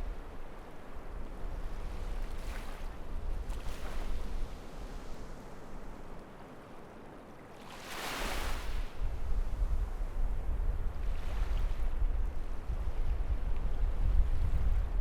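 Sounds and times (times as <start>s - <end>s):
waves breaking on beach: 2.3s - 6.8s, 7.5s - 9.0s
wind buffeting microphone: 8.9s - 15.0s.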